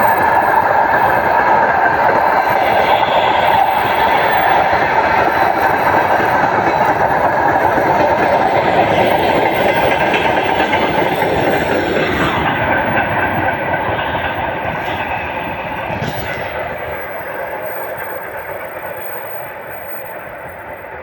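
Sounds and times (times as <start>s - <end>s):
freight train wheels rumbling on rail: 0.0s - 21.0s.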